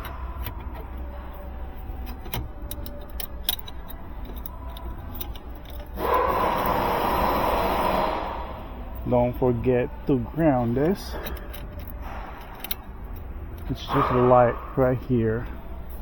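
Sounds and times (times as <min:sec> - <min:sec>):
small parts clicking and rattling: 0:01.8 - 0:06.8, 0:10.8 - 0:14.0.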